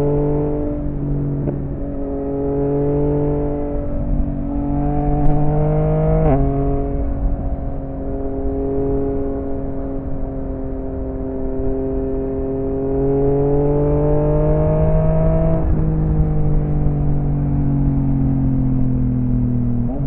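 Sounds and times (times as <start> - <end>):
motorcycle engine accelerating: 0.0 - 20.0
motorcycle gear shift: 5.0 - 5.5.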